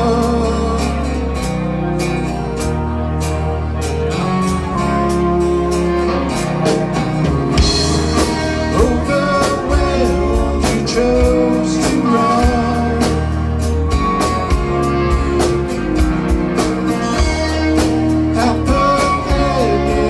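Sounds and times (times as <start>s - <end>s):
strummed guitars: 0.0s - 20.0s
pitch-bending melodic line: 0.1s - 20.0s
drums and cymbals: 4.3s - 20.0s.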